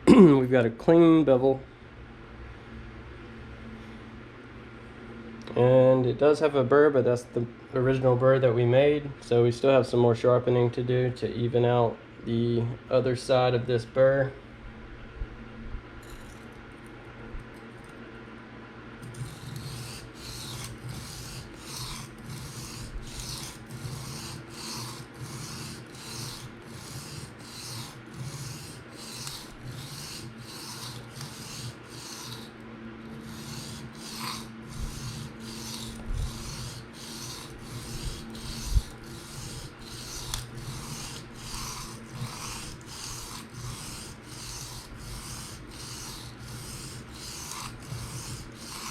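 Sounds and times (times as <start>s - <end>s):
knife blade scraping sharpening plate: 19.1s - 32.5s.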